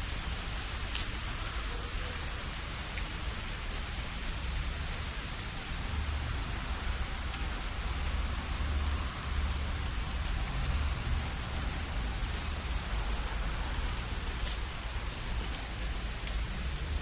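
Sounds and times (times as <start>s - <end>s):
heavy rain falling: 0.0s - 17.0s.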